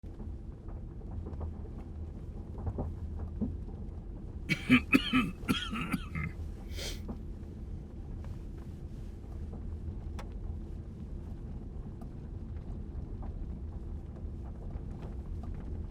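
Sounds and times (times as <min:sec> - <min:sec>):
man coughing: 0:04.5 - 0:07.0.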